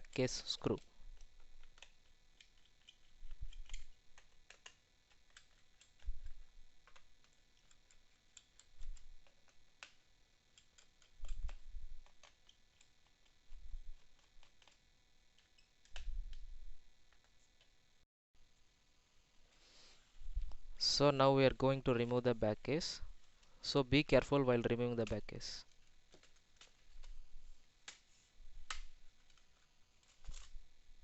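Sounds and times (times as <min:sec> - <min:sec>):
screwdriver clicking on screws: 0:00.0 - 0:16.4.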